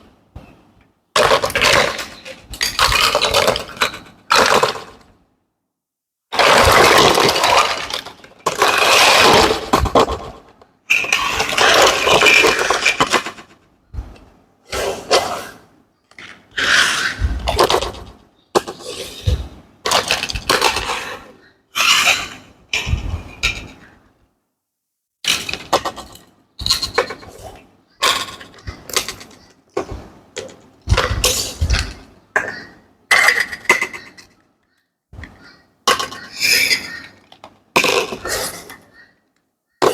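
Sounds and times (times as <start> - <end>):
plastic toy pieces clicking: 1.2 - 5.1, 6.4 - 13.6
toy piece knocking down: 6.4 - 13.6.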